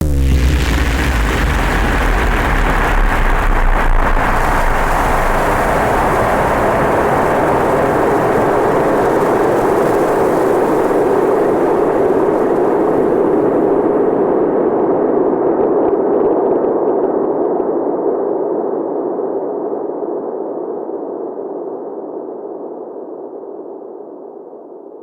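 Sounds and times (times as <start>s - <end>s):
deep roaring rumble: 0.0s - 10.2s.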